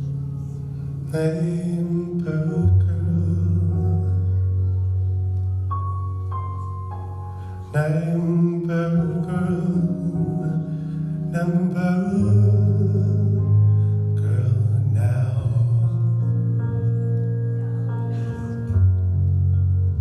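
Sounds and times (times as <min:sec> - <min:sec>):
music with held low note: 0:00.0 - 0:20.0
person singing: 0:00.4 - 0:05.1, 0:07.6 - 0:18.9.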